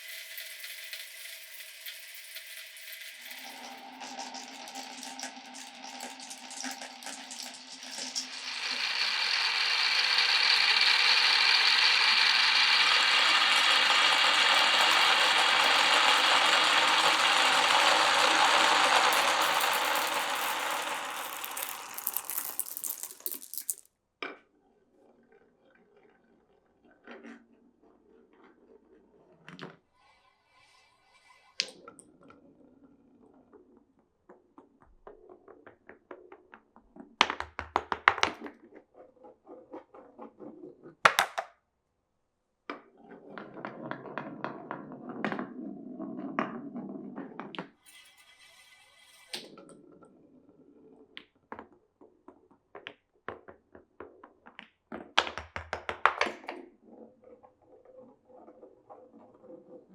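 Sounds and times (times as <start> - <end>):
marbles rolling on wood: 0.0 - 23.9, 37.2 - 38.5, 40.5 - 41.5, 55.2 - 57.1
marbles clacking on wood: 4.6 - 23.9, 41.1 - 41.5, 55.2 - 56.4.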